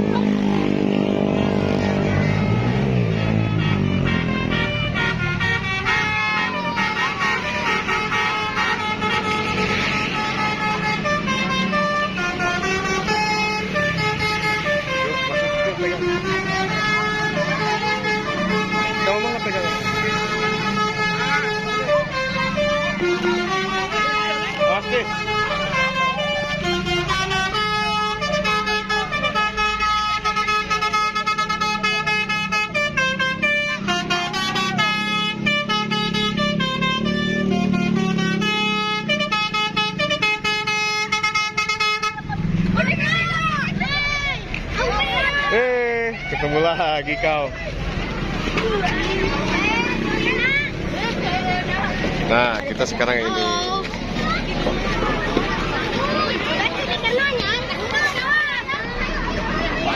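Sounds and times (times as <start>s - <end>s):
bus engine drone: 0.0s - 59.9s
air horns playing a tune: 0.2s - 42.4s.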